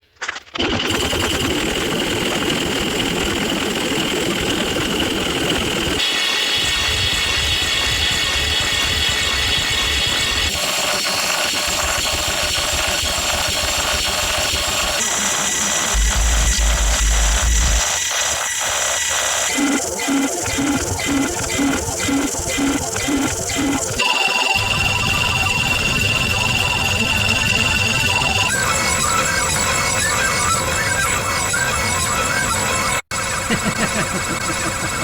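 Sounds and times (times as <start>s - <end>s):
loud noisy sound effects: 14.9s - 35.0s.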